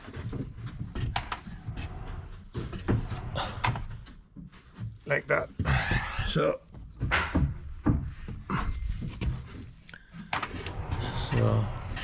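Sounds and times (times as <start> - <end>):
wooden door rolling on track: 0.0 - 4.1, 10.1 - 12.0.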